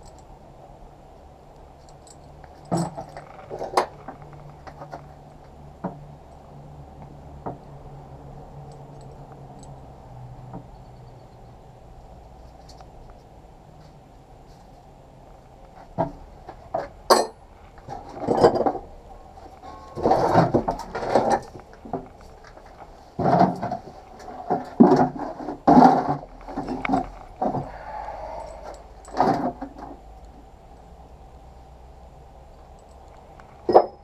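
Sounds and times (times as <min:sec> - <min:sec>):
metal tools clinking and clattering: 0:17.1 - 0:29.9.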